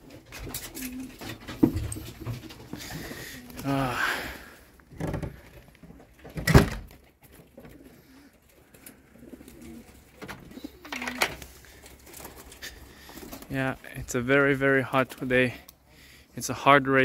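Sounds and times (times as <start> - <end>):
pigeons cooing: 0.0 - 5.4, 7.3 - 13.5.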